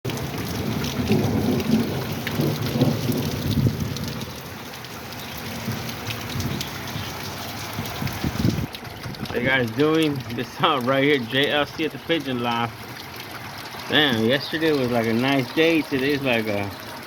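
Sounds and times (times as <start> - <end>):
heavy rain pouring: 0.1 - 17.0
sharp drips: 0.1 - 17.0
thunder rumble: 0.2 - 4.4.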